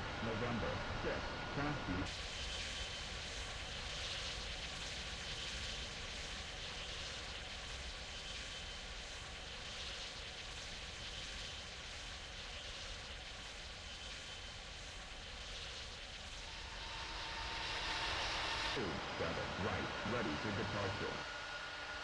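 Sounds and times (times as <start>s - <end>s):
high engine whine: 0.0s - 2.1s, 16.4s - 22.0s
jet engines rushing: 17.9s - 21.3s.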